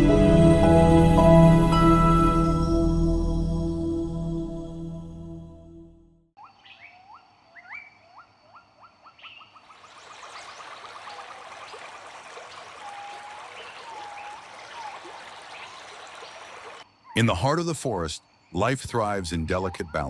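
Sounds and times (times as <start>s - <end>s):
soft new-age music: 0.0s - 5.9s
bird calls: 6.4s - 17.2s
stream rushing: 9.7s - 16.8s.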